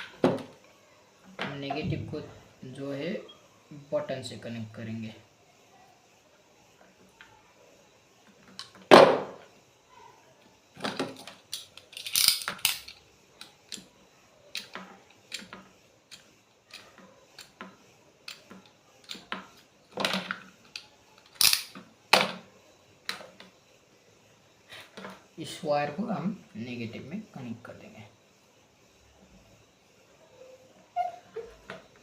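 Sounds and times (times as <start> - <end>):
small parts clicking and tapping: 6.3 - 7.5, 8.2 - 9.5, 10.4 - 23.7.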